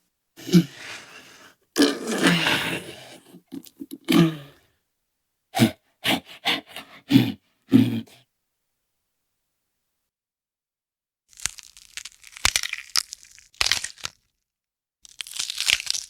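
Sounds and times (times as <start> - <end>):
creature growling and grunting: 0.4 - 4.6, 5.6 - 8.2.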